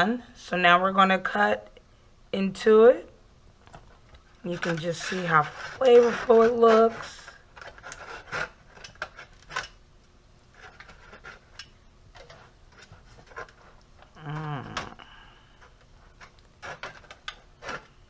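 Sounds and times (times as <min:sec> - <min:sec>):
knife and fork scraping: 0:04.5 - 0:09.8, 0:10.5 - 0:13.8, 0:16.1 - 0:18.0
person murmuring: 0:14.1 - 0:15.1.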